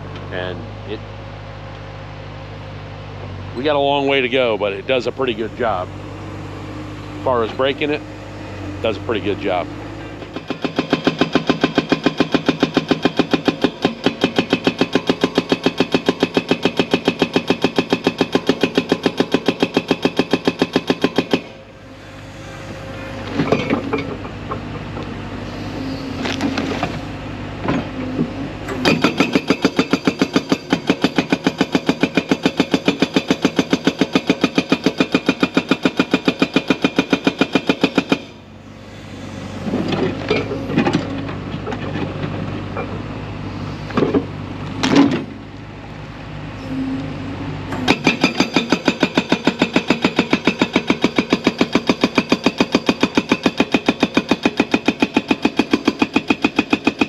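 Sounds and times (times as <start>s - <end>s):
excavator engine running: 0.0s - 57.0s
hydraulic breaker hammering rock: 8.8s - 21.6s, 22.6s - 27.0s, 27.6s - 42.2s, 47.7s - 57.0s.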